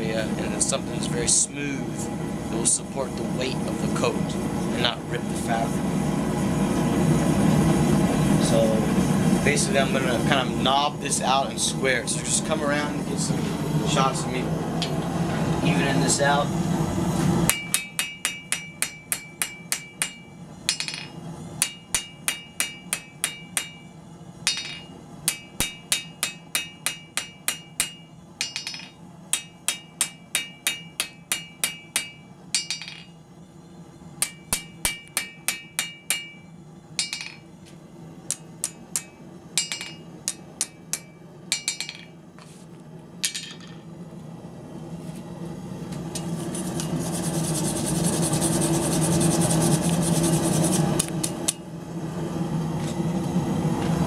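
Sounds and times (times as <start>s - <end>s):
hammer ringing on anvil: 17.5s - 33.2s, 34.2s - 37.5s, 38.3s - 42.2s.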